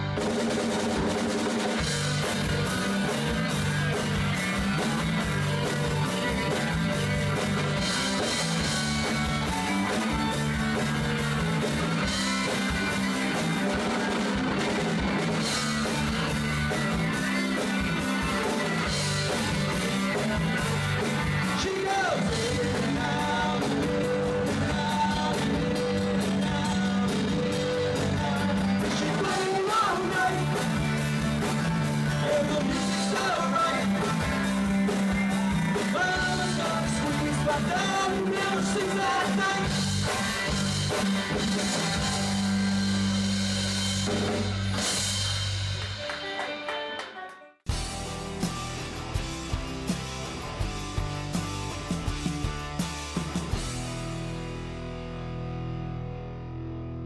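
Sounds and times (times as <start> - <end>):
live rock band playing: 0.0 - 57.0
person singing: 21.5 - 34.6, 35.3 - 40.4.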